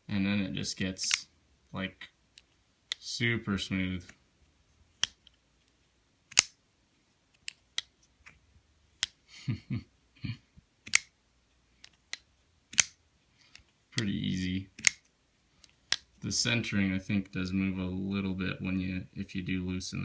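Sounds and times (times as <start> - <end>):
folding knife clicking open and shut: 6.3 - 6.6, 10.8 - 11.1, 11.8 - 13.0, 14.8 - 15.1.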